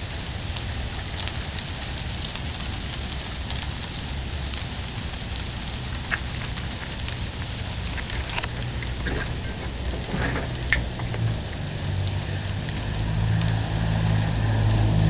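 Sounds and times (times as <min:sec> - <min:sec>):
sleet and freezing rain hissing: 0:00.0 - 0:15.0
low rumble: 0:04.4 - 0:15.0.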